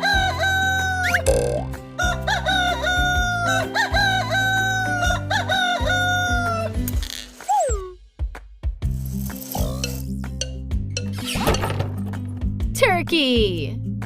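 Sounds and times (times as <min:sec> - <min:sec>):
light background music: 0:00.0 - 0:14.0
rooster crowing: 0:02.0 - 0:06.7.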